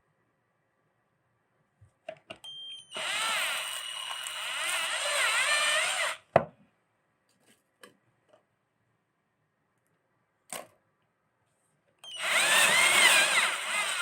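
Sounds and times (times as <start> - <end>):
electric meat grinder whining: 3.0 - 6.2, 12.1 - 14.0.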